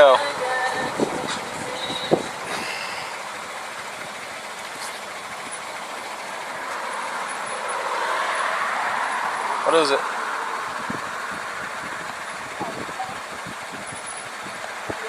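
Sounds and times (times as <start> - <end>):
road traffic rush: 0.0 - 15.0
vehicle passing close by: 4.7 - 15.0.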